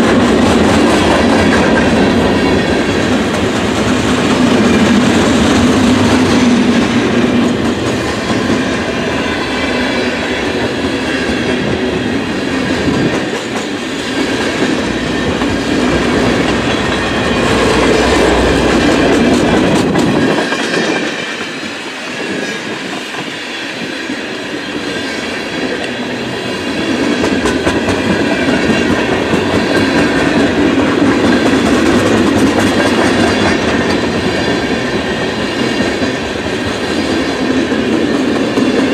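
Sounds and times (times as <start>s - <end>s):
freight train wheels clattering: 0.0s - 38.9s.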